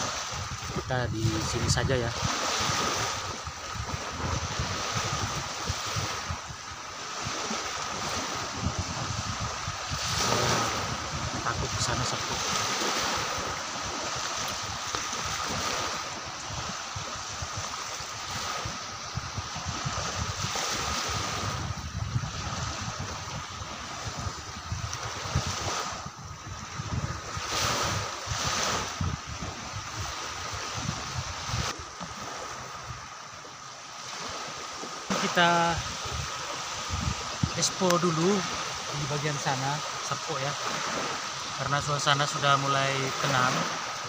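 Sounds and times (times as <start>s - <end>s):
sea surf washing: 0.0s - 44.0s
wind gusting on microphone: 0.0s - 44.0s.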